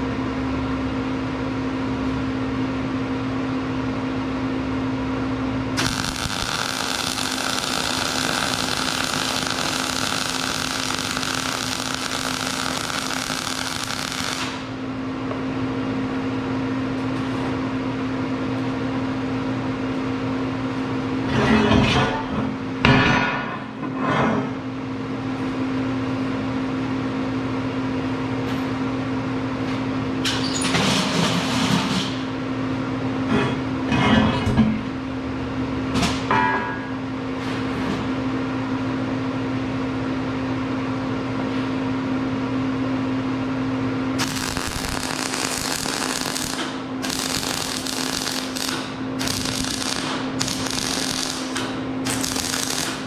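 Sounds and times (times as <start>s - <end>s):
machine hum: 4.6s - 17.0s, 43.8s - 53.0s
metal-working noise bursts: 5.8s - 14.8s, 44.2s - 53.0s
welding arc crackling hiss: 5.8s - 14.8s, 44.2s - 53.0s.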